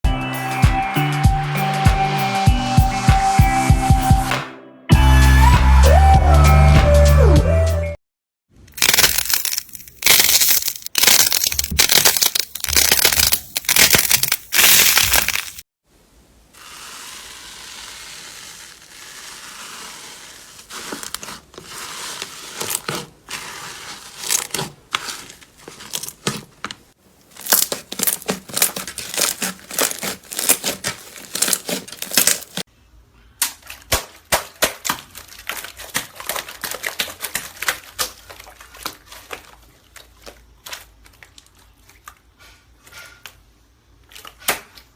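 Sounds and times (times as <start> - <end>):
slime crackling and popping: 8.8 - 15.6, 27.2 - 32.6.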